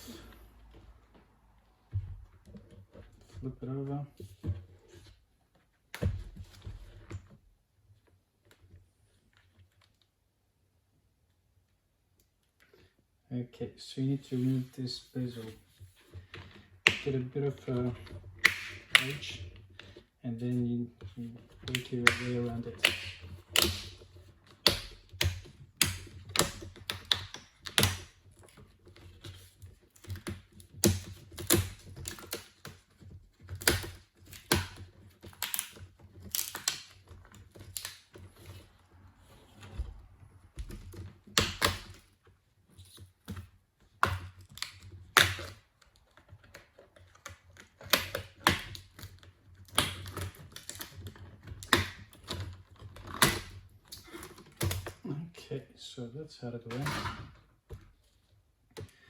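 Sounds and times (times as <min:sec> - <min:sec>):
plastic clips clicking and snapping: 0:16.4 - 0:20.0, 0:21.0 - 0:38.6, 0:42.8 - 0:55.0.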